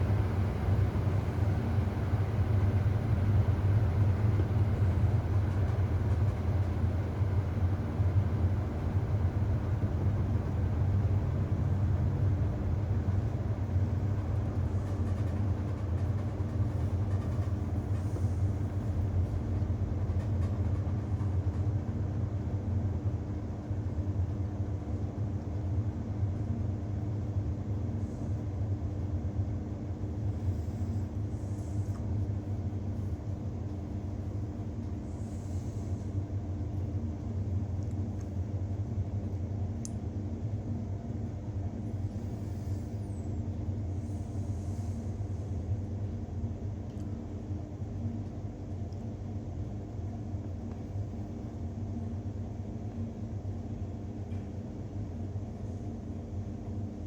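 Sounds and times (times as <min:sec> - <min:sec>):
washing machine motor hum: 0:00.0 - 0:17.9.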